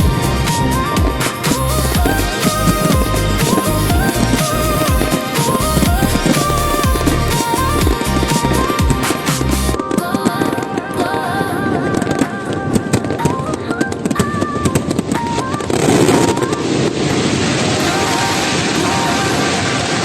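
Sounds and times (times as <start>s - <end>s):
dense steady hiss: 0.0s - 9.8s
music with stepping melody: 0.0s - 9.8s
fireworks popping and crackling: 0.0s - 9.9s, 12.2s - 20.0s.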